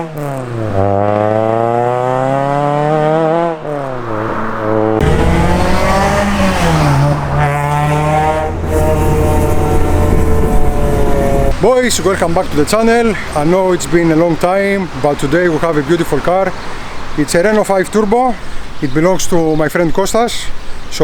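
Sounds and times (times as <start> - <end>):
car engine accelerating: 0.0 - 15.9
road and wind noise: 0.0 - 21.0.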